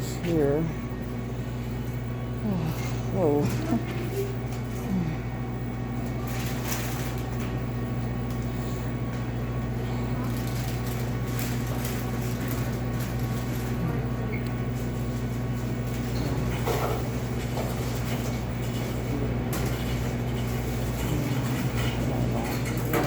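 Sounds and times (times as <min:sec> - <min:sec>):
low machine hum: 0:00.0 - 0:23.0
faint clatters: 0:10.1 - 0:23.0.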